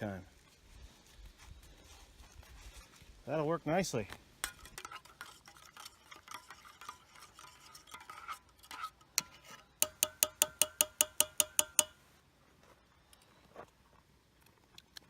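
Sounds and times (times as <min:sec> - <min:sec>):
spoon scraping in mug: 0:04.4 - 0:11.9
spoon clinking against mug: 0:09.8 - 0:12.0.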